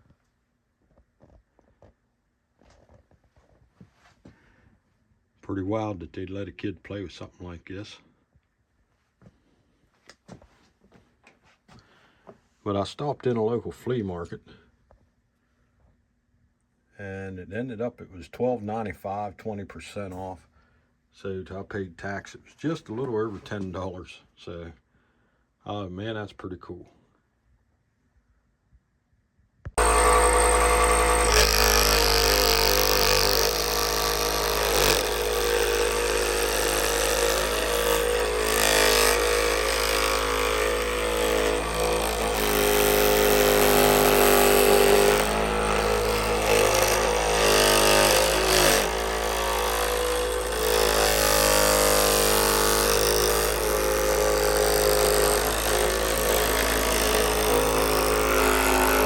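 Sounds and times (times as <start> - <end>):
scroll saw buzzing: 29.7 - 59.0.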